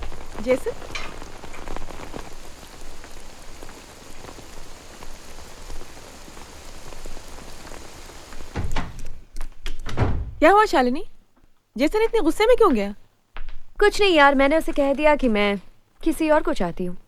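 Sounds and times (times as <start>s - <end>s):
steady rain falling: 0.0s - 13.2s.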